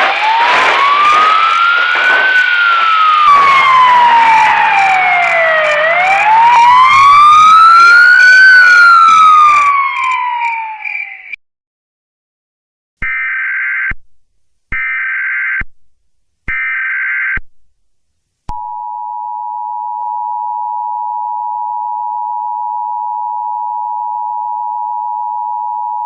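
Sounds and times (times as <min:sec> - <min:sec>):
screechy data tone bursts: 0:00.0 - 0:11.4.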